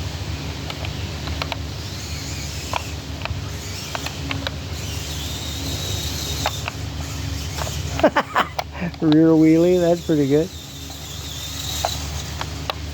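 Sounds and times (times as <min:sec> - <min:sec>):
toy car electric motor and gears: 0:00.0 - 0:12.9.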